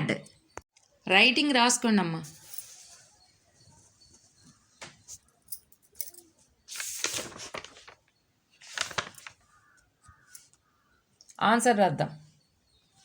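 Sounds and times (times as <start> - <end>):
paper rustling: 6.7 - 9.8.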